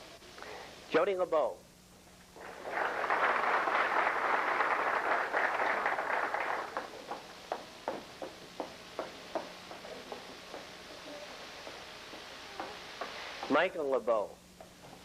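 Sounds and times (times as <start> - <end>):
audience applauding: 2.4 - 7.7.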